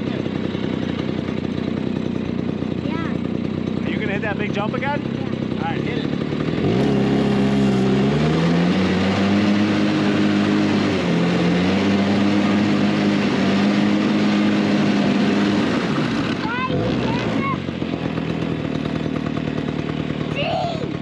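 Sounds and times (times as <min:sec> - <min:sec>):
snowmobile engine revving: 0:00.0 - 0:21.0.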